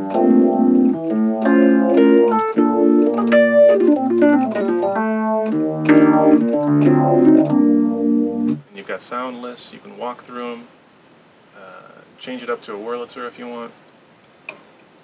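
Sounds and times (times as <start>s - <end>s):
electric piano chords: 0.0s - 8.7s.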